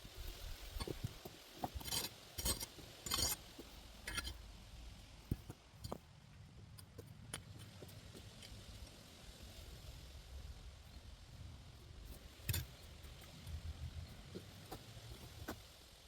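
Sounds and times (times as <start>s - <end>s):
soil and plants rustling: 0.0s - 16.0s.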